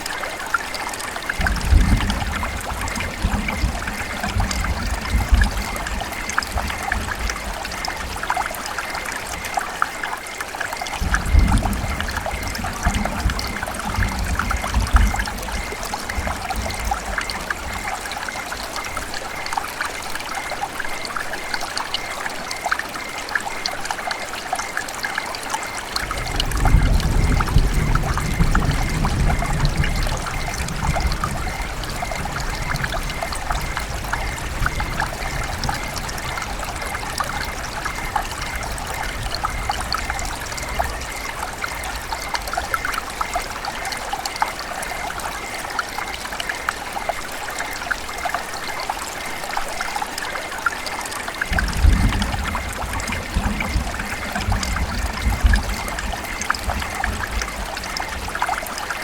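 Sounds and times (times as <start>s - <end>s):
river water gurgling: 0.0s - 59.0s.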